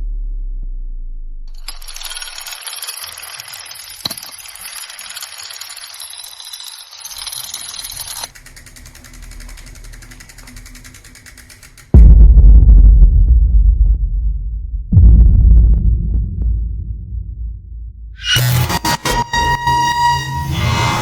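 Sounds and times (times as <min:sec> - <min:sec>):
rattling clinking noise: 0:01.5 - 0:11.9.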